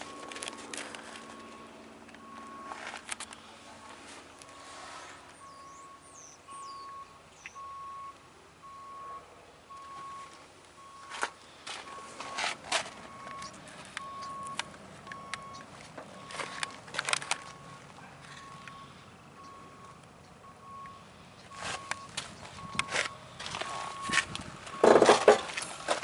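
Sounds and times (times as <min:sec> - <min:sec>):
bird chirping: 0:05.4 - 0:08.1.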